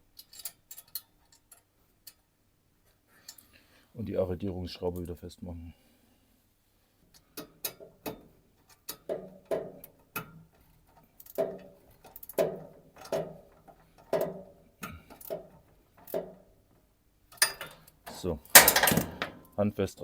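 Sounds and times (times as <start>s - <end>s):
metallic clicks of tightening screw: 0.1s - 2.2s.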